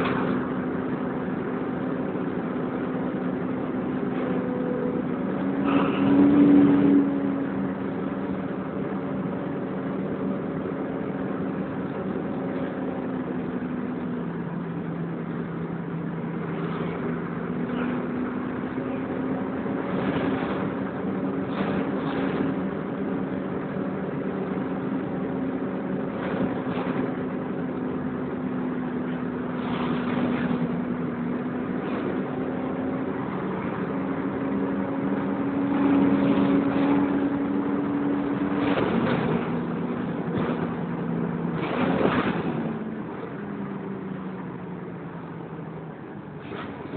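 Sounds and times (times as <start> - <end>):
bus engine running: 0.0 - 46.9
rattles and knocks: 38.4 - 42.8.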